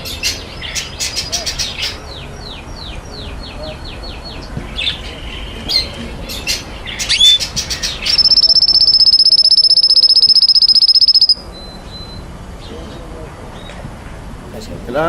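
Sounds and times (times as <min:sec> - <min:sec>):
cage birds chirping and squawking: 0:00.0 - 0:13.8
rapid high trill: 0:04.6 - 0:11.5.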